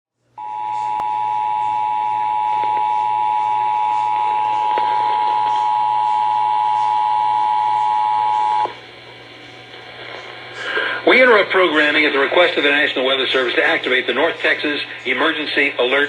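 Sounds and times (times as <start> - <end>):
low steady hum: 0.2 - 16.0
two-tone alarm: 0.4 - 8.8.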